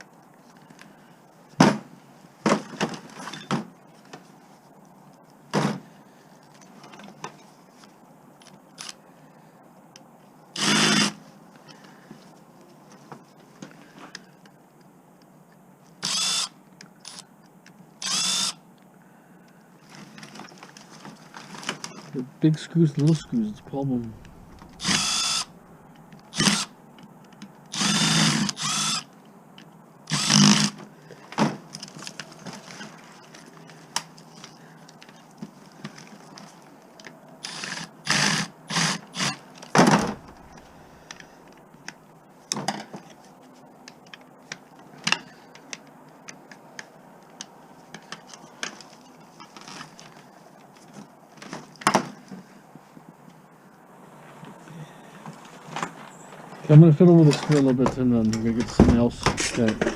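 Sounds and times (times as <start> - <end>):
drill motor whine: 16.0 - 16.5, 18.0 - 18.6, 24.1 - 25.6, 26.3 - 26.7, 27.7 - 29.0, 30.1 - 30.7
screws clicking and knocking: 24.3 - 25.5.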